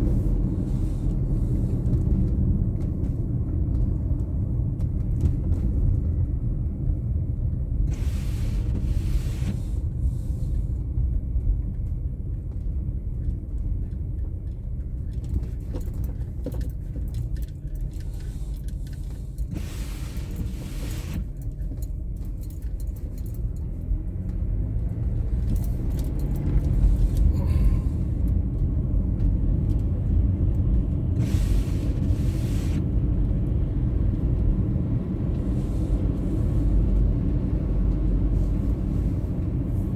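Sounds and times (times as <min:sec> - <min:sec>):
car engine and tyres rumbling: 0:00.0 - 0:39.9
light clicks and rattles: 0:11.0 - 0:19.5, 0:21.2 - 0:30.9.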